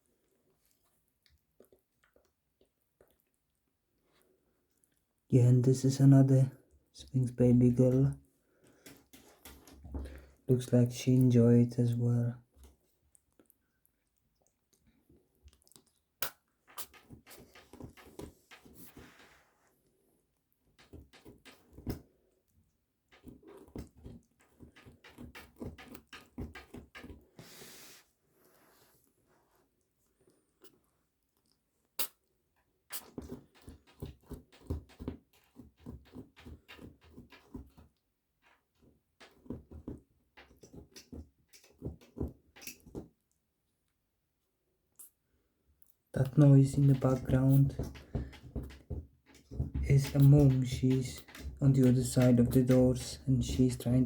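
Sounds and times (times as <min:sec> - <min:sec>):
kitten licking and smacking food: 0:00.2 - 0:05.2, 0:12.7 - 0:27.3, 0:30.2 - 0:37.6.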